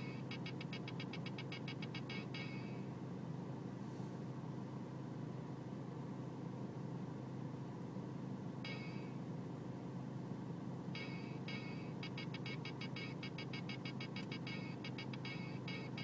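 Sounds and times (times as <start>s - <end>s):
short electronic beeps: 0.0s - 2.8s, 8.6s - 9.1s, 11.0s - 16.0s.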